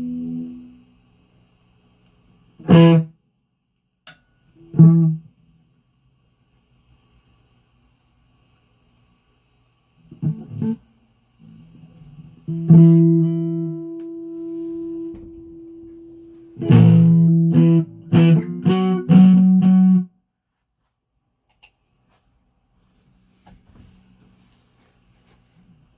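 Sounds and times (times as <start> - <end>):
guitar strings plucked: 0.0 - 0.8, 16.6 - 20.0.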